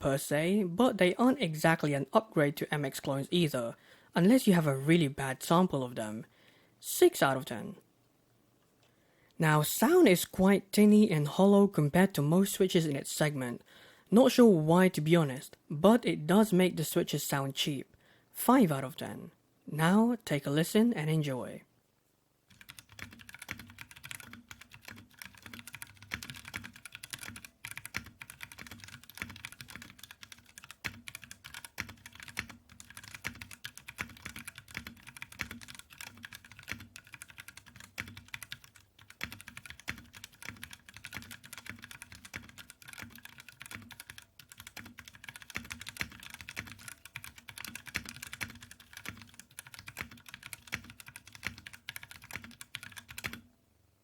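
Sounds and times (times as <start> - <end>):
fast typing on mechanical keyboard: 22.5 - 53.4.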